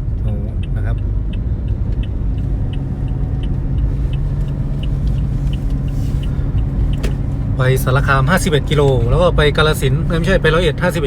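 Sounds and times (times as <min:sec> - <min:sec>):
car engine hum: 0:00.0 - 0:11.0
road rumble: 0:00.0 - 0:11.0
turn signal ticking: 0:00.0 - 0:11.0.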